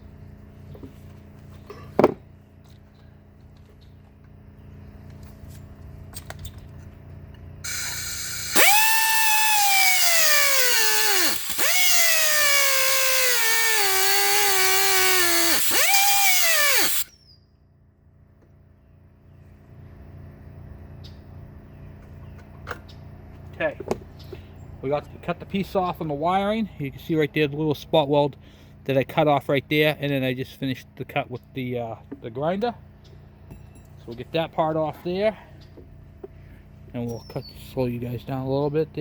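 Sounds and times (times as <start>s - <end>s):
grinder cutting steel: 7.6s - 17.1s.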